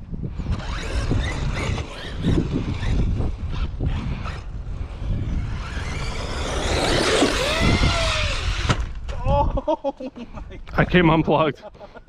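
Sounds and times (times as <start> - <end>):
electric motor whine: 0.4 - 9.0.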